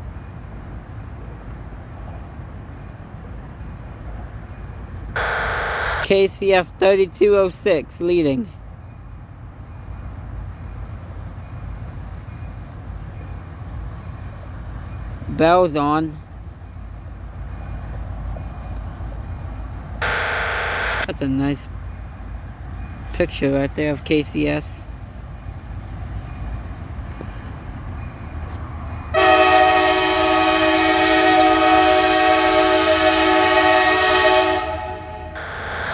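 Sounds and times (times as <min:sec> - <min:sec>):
diesel locomotive rumbling past: 0:00.0 - 0:35.9
locomotive air horn chord: 0:29.1 - 0:35.9.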